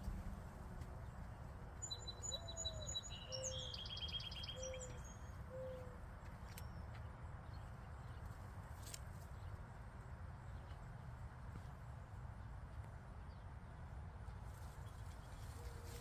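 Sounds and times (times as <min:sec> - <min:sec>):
steady low rumble: 0:00.0 - 0:02.1.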